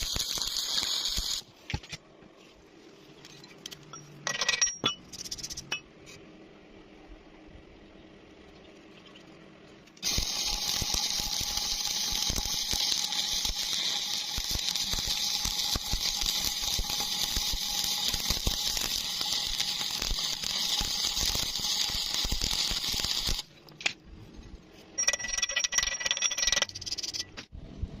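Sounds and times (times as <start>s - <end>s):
arc welding crackling: 0.0s - 1.5s, 10.0s - 23.5s.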